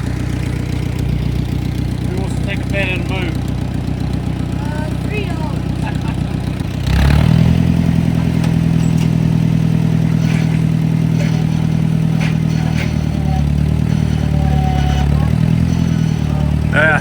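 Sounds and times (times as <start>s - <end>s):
tractor engine straining: 0.0s - 17.0s
light metal clanks: 7.5s - 17.0s.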